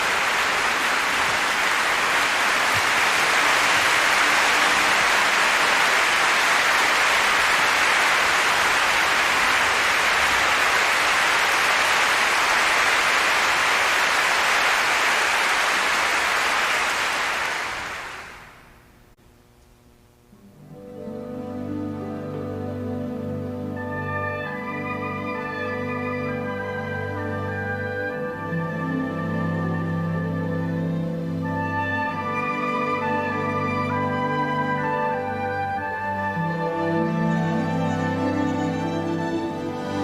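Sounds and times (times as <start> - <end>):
audience applauding: 0.0 - 18.7.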